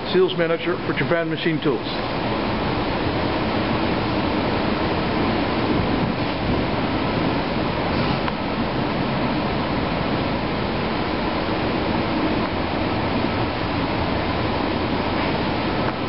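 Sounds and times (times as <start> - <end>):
machinery humming and rushing: 0.0 - 16.0.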